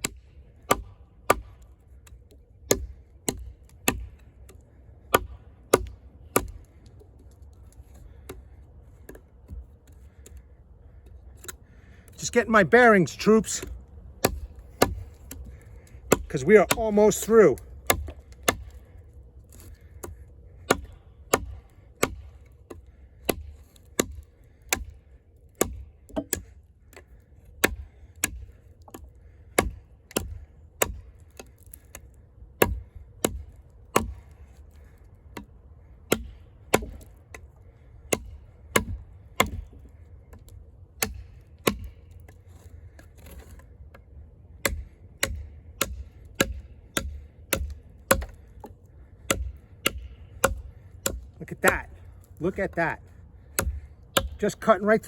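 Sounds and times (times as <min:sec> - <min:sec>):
knife chopping into log: 0:02.7 - 0:04.1, 0:16.1 - 0:17.2, 0:20.7 - 0:22.3, 0:29.6 - 0:31.7, 0:36.1 - 0:37.1, 0:38.1 - 0:39.7, 0:41.0 - 0:41.9, 0:44.6 - 0:48.7, 0:49.3 - 0:51.9, 0:52.6 - 0:54.6.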